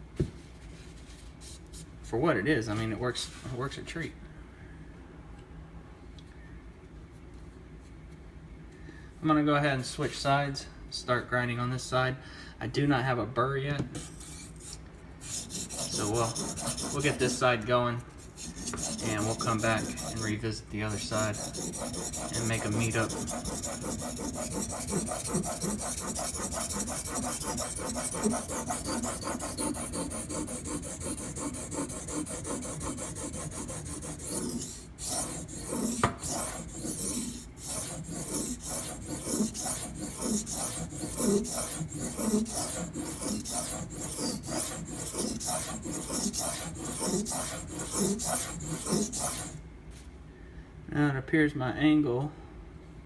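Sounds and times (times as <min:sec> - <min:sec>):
knife scraping on sharpening stone: 0:15.3 - 0:17.4, 0:18.3 - 0:20.3, 0:21.0 - 0:49.6.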